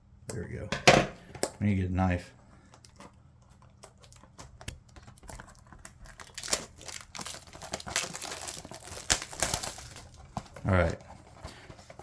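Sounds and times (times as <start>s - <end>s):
plastic wrap crinkling and tearing: 3.6s - 12.0s.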